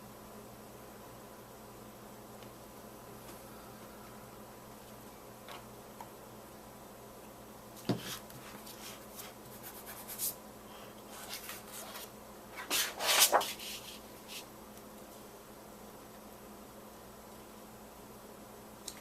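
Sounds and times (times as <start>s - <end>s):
paper rustling: 11.1s - 14.4s.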